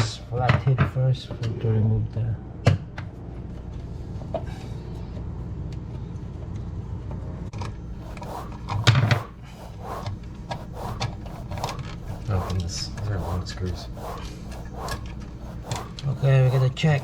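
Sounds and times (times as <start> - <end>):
steady low hum: 7.9 - 17.0.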